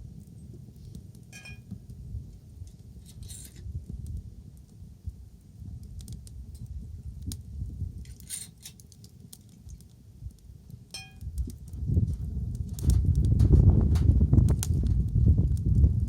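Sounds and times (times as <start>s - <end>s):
wood fire crackling: 0.0s - 16.0s
short ringing ping: 1.4s - 1.6s, 11.0s - 11.2s.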